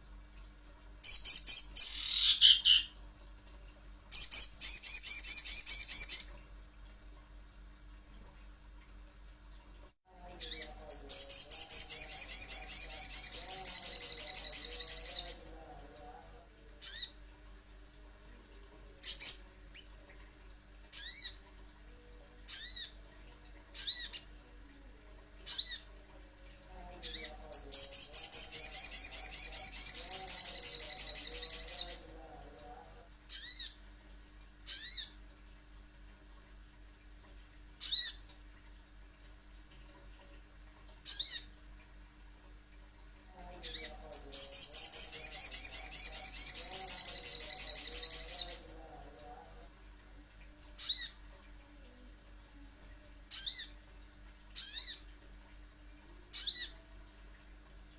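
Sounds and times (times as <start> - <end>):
faint steady hum: 0.0 - 57.9
bird fast high trilling: 1.1 - 2.9.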